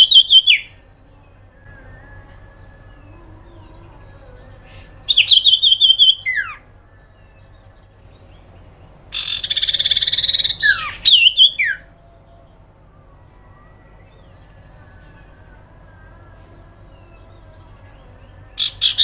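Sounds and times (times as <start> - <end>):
bird calling: 0.0 - 19.0
rapid buzzing bird trill: 9.1 - 11.9.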